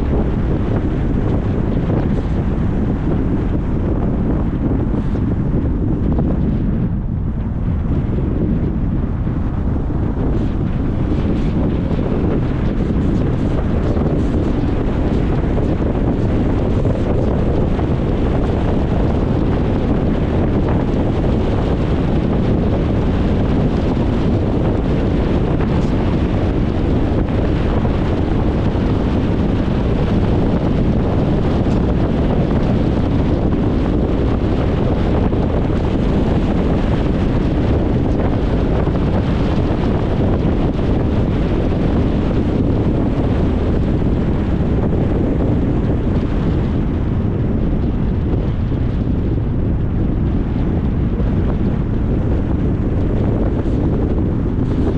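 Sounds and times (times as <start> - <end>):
wind noise from driving car: 0.0 - 54.9.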